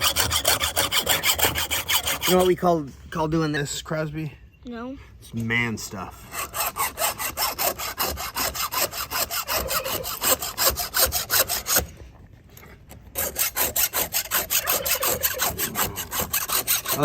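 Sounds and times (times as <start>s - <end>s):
file rasping on chainsaw chain: 0.0s - 2.7s, 6.2s - 12.0s, 13.1s - 17.0s.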